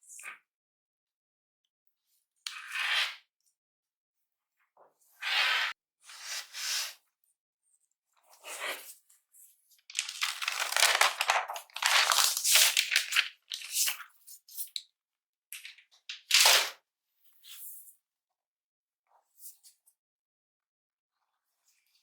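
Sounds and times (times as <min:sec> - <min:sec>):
sharp ripping: 0:09.9 - 0:13.8
paper and plastic rustling and tearing: 0:09.9 - 0:14.0, 0:15.6 - 0:16.7.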